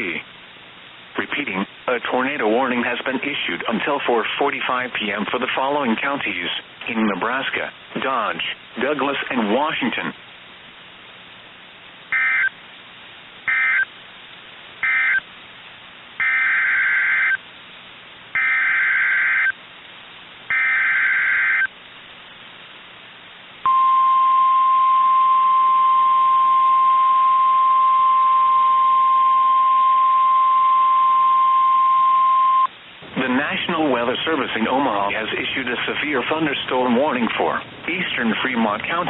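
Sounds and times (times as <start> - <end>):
steady warning alarm tone: 12.1 - 12.6, 13.5 - 13.9, 14.8 - 15.2, 16.2 - 17.4, 18.4 - 19.6, 20.5 - 21.7
screeching data bursts: 14.8 - 15.2, 16.2 - 17.4, 18.4 - 19.6, 20.5 - 21.7.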